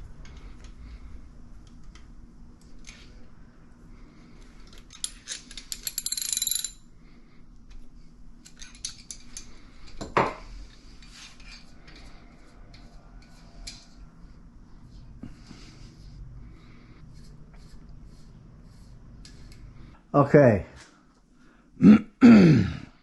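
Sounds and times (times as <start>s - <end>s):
metal tools clinking and rattling: 4.6s - 6.8s, 8.4s - 10.0s.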